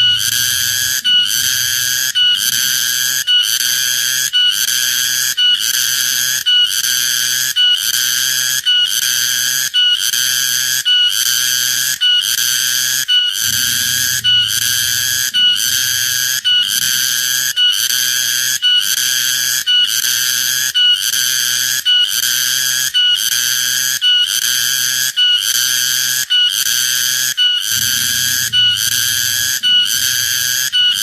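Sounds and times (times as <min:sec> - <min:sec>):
cicada buzzing: 0:00.0 - 0:07.4, 0:12.7 - 0:21.8, 0:27.7 - 0:31.0.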